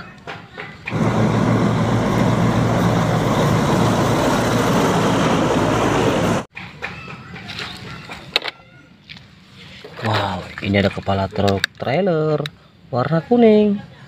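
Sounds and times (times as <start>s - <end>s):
truck engine running: 0.8s - 6.5s.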